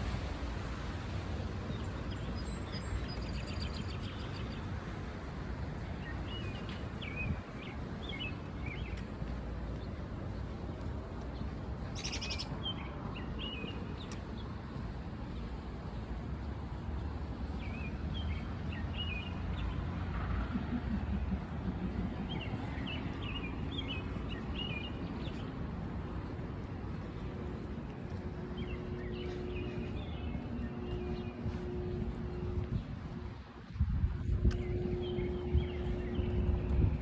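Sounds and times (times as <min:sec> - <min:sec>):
small birds chirping: 0:12.0 - 0:12.5
low outdoor rumble: 0:19.3 - 0:37.0.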